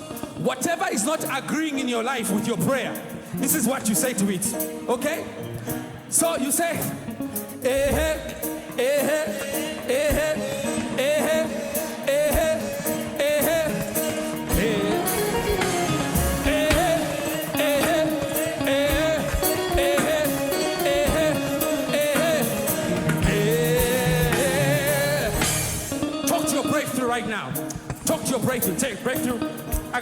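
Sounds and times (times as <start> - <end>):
band playing gospel music: 0.0 - 30.0
person singing: 0.0 - 30.0
steady drum beat: 7.7 - 26.6, 27.6 - 30.0.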